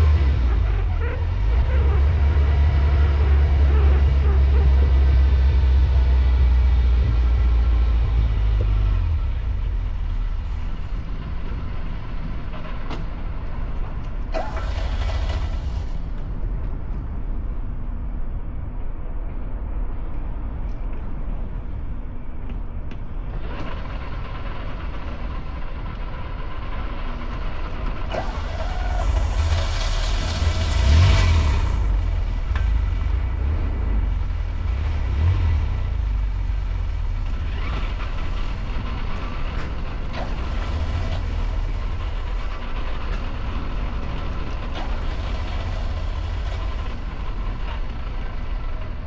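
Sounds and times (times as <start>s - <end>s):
car engine misfiring: 0.0s - 18.0s, 23.1s - 49.0s
rushing noise: 0.0s - 22.4s, 23.1s - 49.0s.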